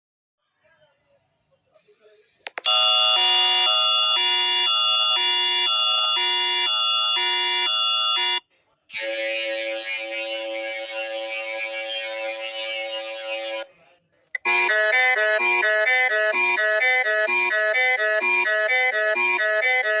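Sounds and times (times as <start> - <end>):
alternating high and low alarm tones: 2.6 - 13.7, 14.4 - 20.0
steady dense alert tone: 8.9 - 13.7.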